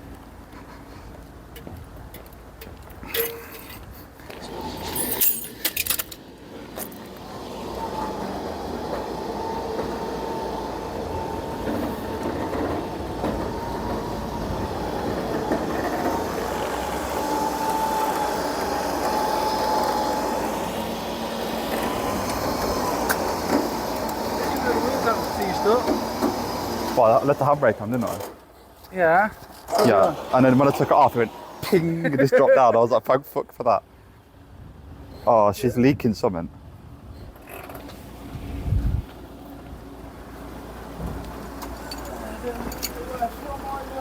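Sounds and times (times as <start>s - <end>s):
winch drone with whine: 4.2s - 28.3s, 29.4s - 32.9s.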